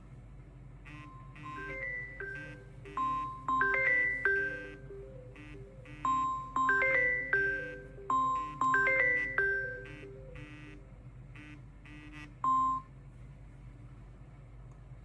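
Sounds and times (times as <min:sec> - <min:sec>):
chiming phone ringtone: 0:00.9 - 0:12.9.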